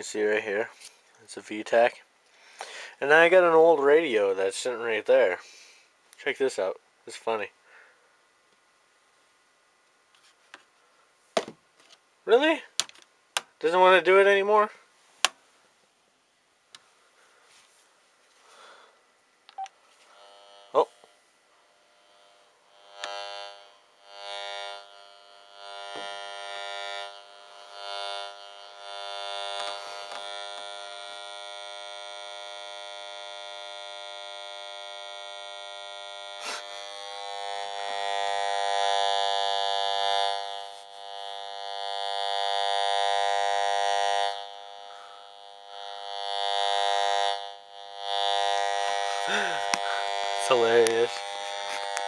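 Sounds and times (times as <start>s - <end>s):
pulsing electronic buzz: 20.1s - 21.1s, 21.8s - 52.0s.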